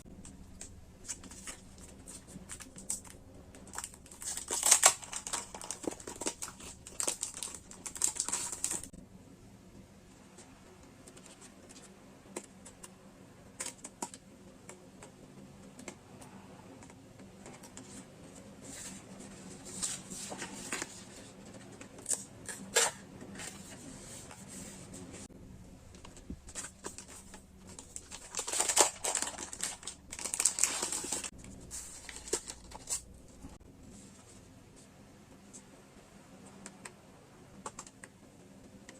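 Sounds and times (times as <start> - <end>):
packaging crinkling and rustling: 0.2 - 8.9, 26.0 - 33.6.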